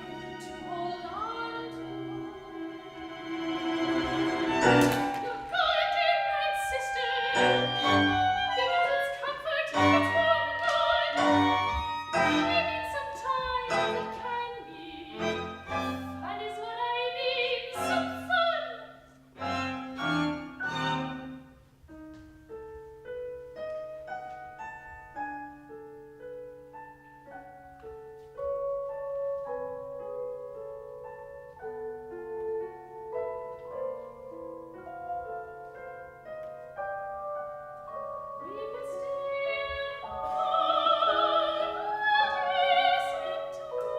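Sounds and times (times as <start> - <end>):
instrumental accompaniment: 0.0 - 18.4, 19.2 - 43.9
soprano singing opera: 0.1 - 3.2, 3.8 - 19.0, 38.4 - 43.9.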